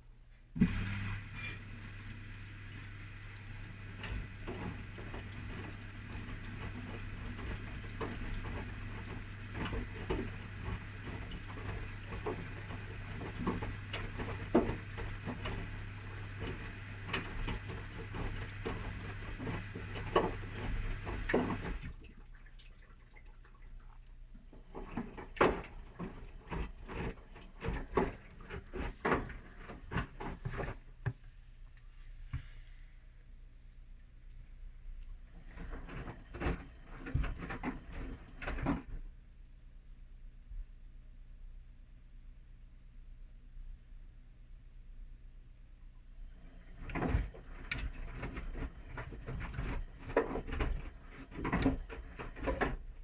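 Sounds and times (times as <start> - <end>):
low motor hum: 0.6 - 21.8
water sloshing in washing machine: 0.6 - 32.6, 34.8 - 39.2, 46.2 - 53.0.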